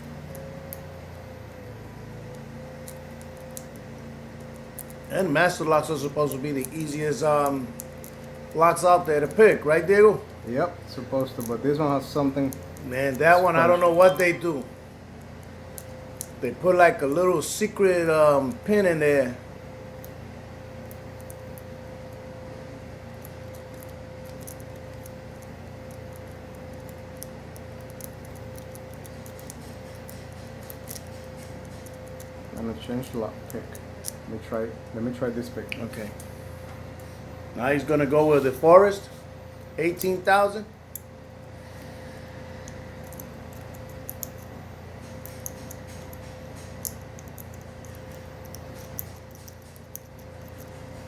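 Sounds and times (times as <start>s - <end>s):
steady background hum: 0.0s - 51.0s.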